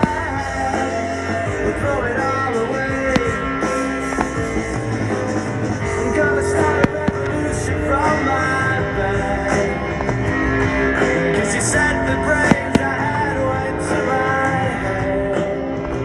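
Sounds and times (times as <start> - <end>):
rock music with electric guitar: 0.0 - 16.0
sharp firework bangs: 3.0 - 4.8.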